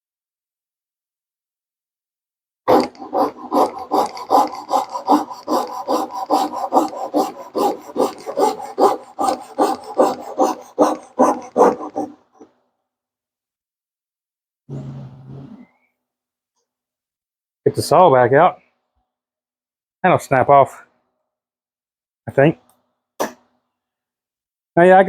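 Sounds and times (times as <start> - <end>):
hand saw cutting wood: 2.7 - 12.5.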